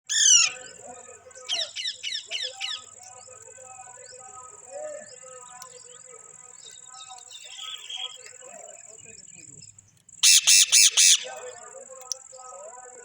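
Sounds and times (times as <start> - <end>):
parakeet screeching: 0.1 - 0.7, 10.2 - 11.3.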